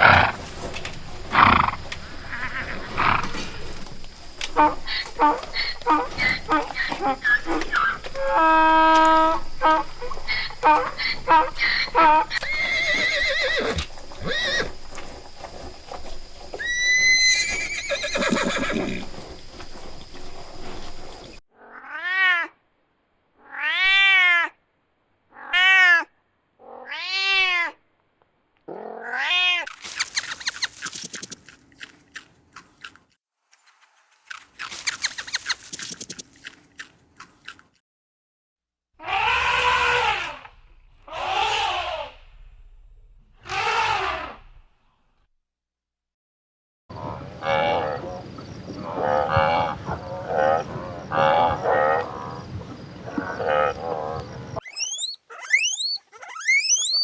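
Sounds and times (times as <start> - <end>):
cat meowing: 21.6 - 22.5, 23.4 - 24.6, 25.4 - 27.8, 28.9 - 29.7
mixed noises: 29.7 - 33.0, 34.3 - 36.9.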